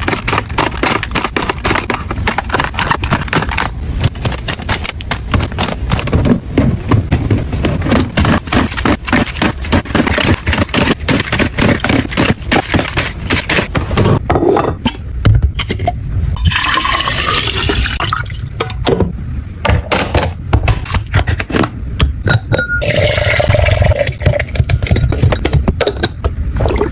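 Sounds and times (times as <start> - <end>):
liquid pouring into container: 16.4 - 18.3.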